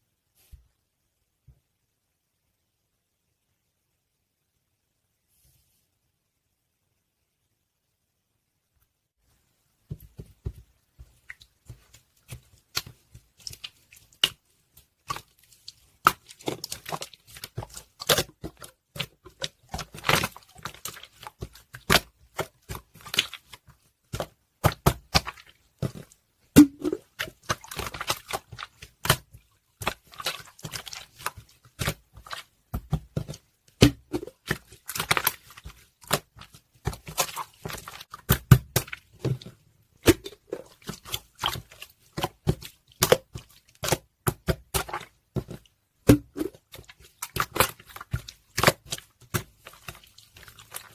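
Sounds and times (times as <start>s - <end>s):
slime squishing and popping: 11.3s - 50.9s.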